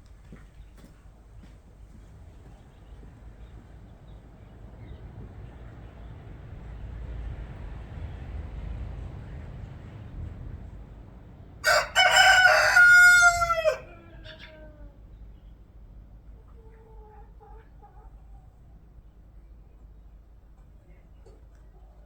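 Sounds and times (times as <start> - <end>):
rooster crowing: 11.6 - 14.6.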